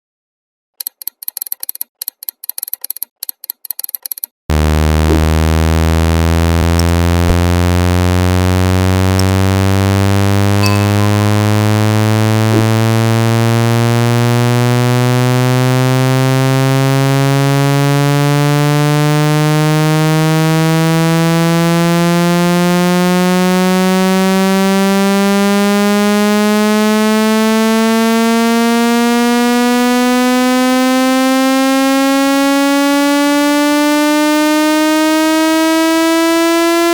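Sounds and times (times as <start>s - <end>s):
rapid high-pitched clicks: 0.8s - 4.4s
buzzy low tone rising: 4.5s - 36.9s.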